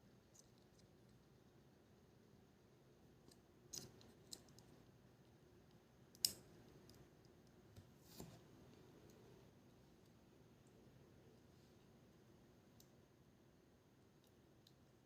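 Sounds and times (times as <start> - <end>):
faint clicks and taps of small tools: 3.2 - 4.8, 5.6 - 9.3, 12.7 - 13.0, 14.1 - 15.0.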